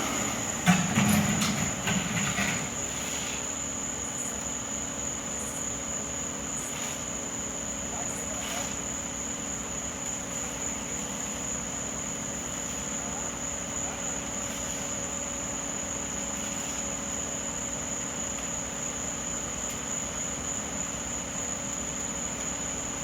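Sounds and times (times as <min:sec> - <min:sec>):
low mechanical hum: 0:00.0 - 0:23.0.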